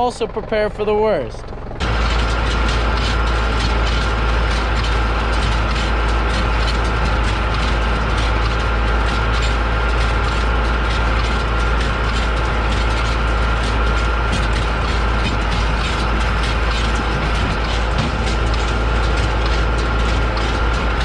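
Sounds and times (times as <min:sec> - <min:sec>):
tractor engine drone: 0:00.0 - 0:21.0
baler clattering: 0:01.4 - 0:21.0.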